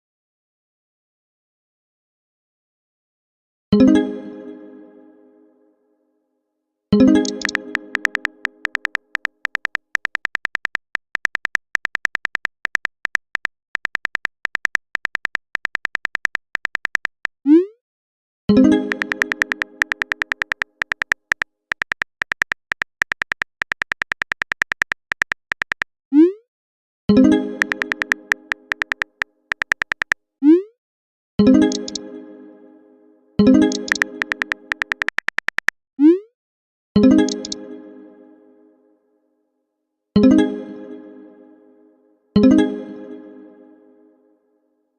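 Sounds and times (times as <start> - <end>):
typing clicks: 7.2 - 17.4, 18.9 - 25.9, 27.6 - 30.2, 31.6 - 32.0, 33.6 - 35.8, 37.2 - 37.6.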